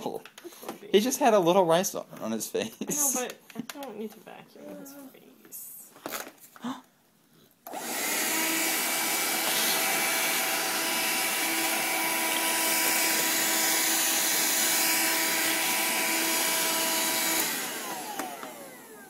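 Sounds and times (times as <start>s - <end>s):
vacuum cleaner running: 7.6s - 19.0s.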